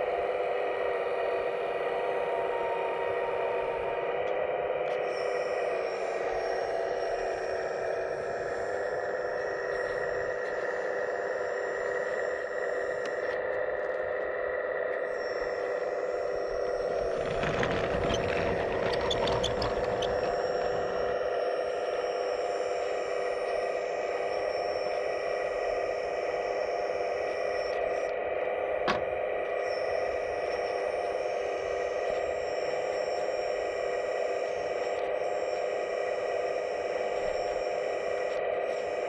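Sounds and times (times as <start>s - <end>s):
hydraulic pump whining: 0.7s - 36.0s
scraping with clicks: 16.9s - 21.1s.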